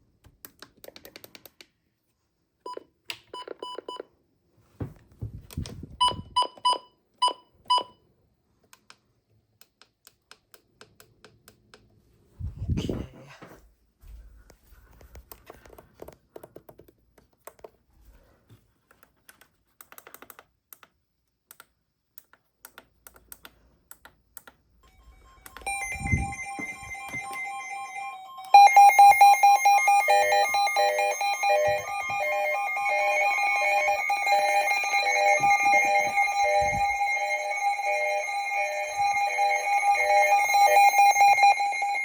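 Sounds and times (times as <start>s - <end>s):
beeping alert tones: 24.9s - 42.0s
weather radio alert sirens: 25.5s - 42.0s.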